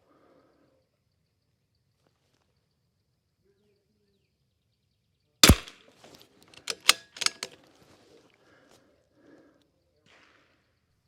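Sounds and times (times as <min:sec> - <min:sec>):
sharp clicks: 0:05.4 - 0:05.7, 0:06.5 - 0:07.6
rifle shot: 0:05.4 - 0:05.8, 0:06.6 - 0:07.5.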